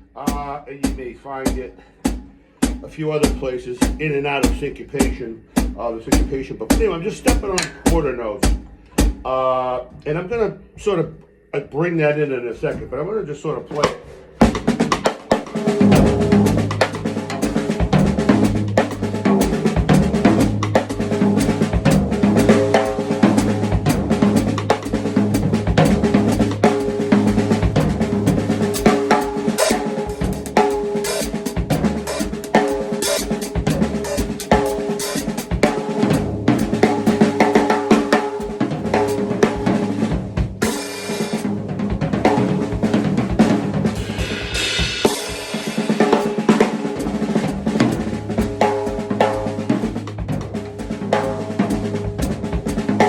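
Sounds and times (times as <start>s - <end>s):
drum kit groove: 0.0s - 10.2s, 12.5s - 53.0s
hi-hat pedal closing: 28.7s - 35.6s.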